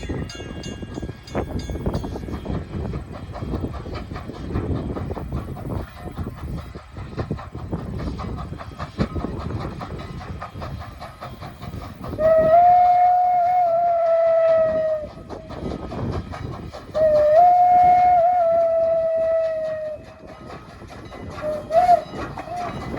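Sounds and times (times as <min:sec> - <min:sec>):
train running with rail clatter: 0:00.0 - 0:22.9
steam whistle blasts: 0:12.2 - 0:15.3, 0:17.0 - 0:20.0, 0:21.4 - 0:22.8.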